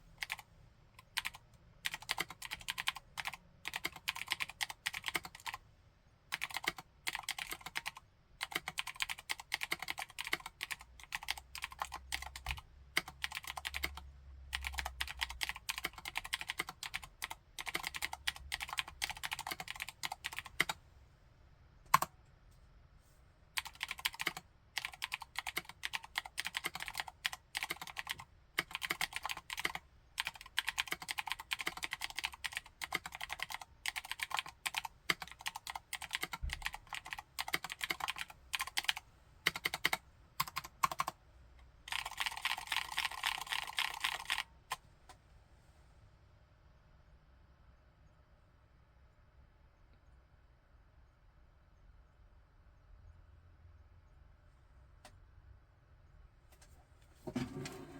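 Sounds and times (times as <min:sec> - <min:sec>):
clicky mechanical keyboard typing: 0:00.2 - 0:05.6, 0:06.3 - 0:20.8, 0:21.9 - 0:22.1, 0:23.6 - 0:41.2, 0:41.9 - 0:44.8.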